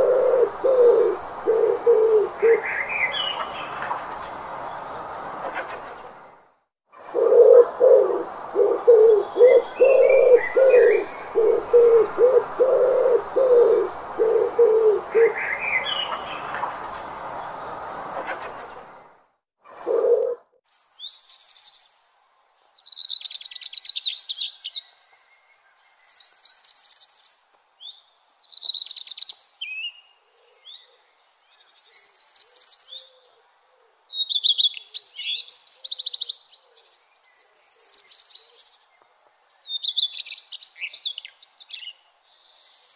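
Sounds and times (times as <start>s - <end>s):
chirps: 0.0s - 4.3s, 5.4s - 6.2s, 7.1s - 17.0s, 18.2s - 19.0s
low pulsing calls: 0.0s - 6.2s, 7.0s - 19.0s
songbird singing: 0.0s - 19.1s, 19.7s - 42.9s
insect trill: 0.0s - 20.6s.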